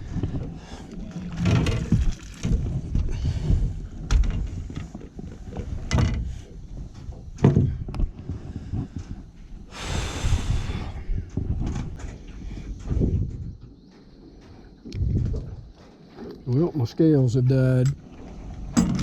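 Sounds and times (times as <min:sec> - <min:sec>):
rustling handling noise: 0:01.0 - 0:02.8
knocks against a boat: 0:07.1 - 0:08.8, 0:18.7 - 0:19.0.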